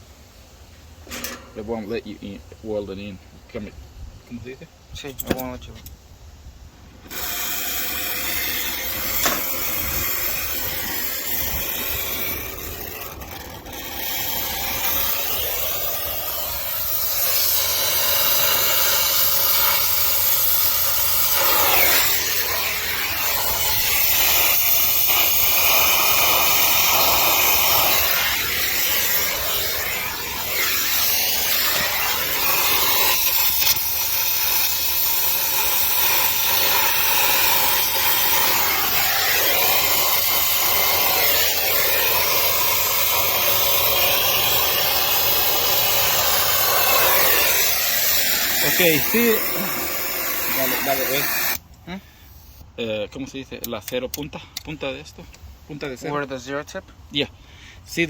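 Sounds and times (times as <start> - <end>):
torch flame hissing: 6.8 - 51.6.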